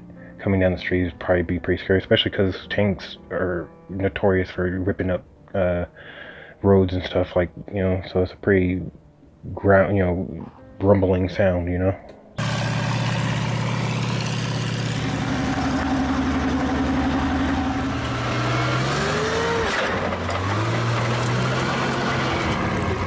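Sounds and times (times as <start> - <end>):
rising whine: 12.4 - 23.0
tank engine revving: 12.4 - 23.0.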